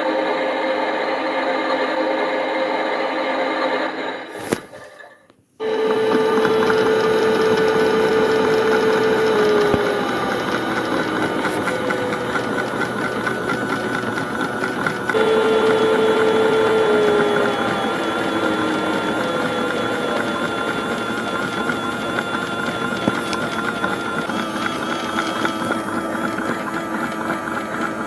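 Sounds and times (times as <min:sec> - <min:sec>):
toy washing machine motor whirring: 0:05.6 - 0:28.0.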